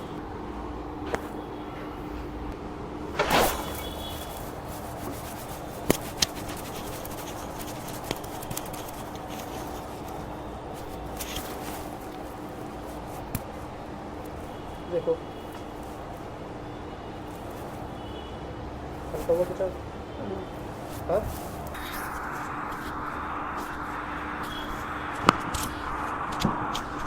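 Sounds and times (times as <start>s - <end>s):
steady low hum: 0.0s - 27.0s
brief rustle: 3.2s - 13.6s, 20.6s - 27.0s.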